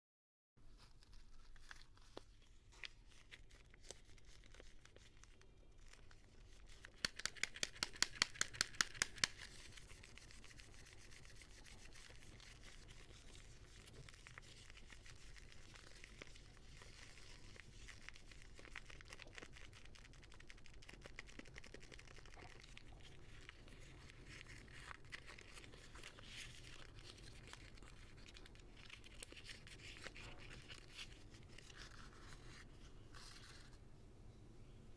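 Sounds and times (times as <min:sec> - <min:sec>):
paper and plastic crinkling: 0:00.7 - 0:10.5, 0:11.7 - 0:33.8.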